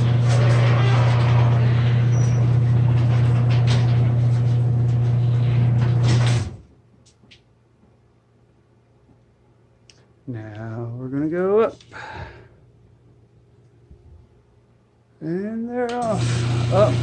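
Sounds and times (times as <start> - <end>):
garage door opener motor drone: 0.0 - 6.6, 16.0 - 17.0
garage doors rattling: 0.0 - 6.7, 16.1 - 17.0.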